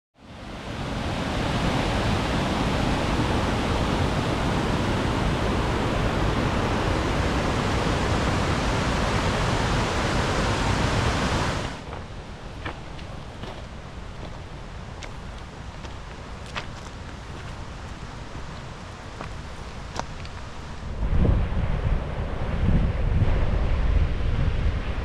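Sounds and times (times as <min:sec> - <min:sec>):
water pouring down waterfall: 0:00.6 - 0:11.8.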